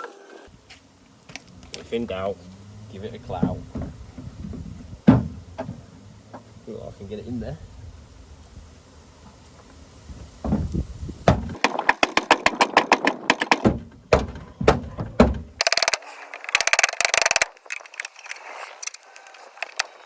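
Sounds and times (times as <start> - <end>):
rattling and scraping: 1.3 - 6.7, 9.2 - 20.0
metal knocks on car panel: 11.3 - 11.7, 13.6 - 15.6.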